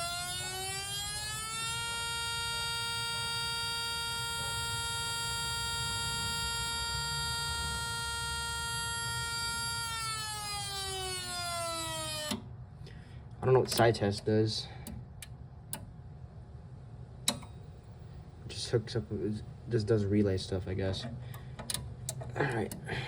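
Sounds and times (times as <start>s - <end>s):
tornado siren steady tone: 0.0s - 12.6s.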